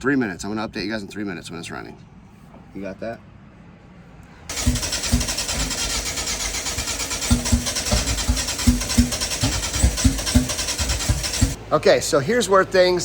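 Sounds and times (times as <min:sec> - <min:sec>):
race car engine cranking and firing: 0:04.5 - 0:11.6.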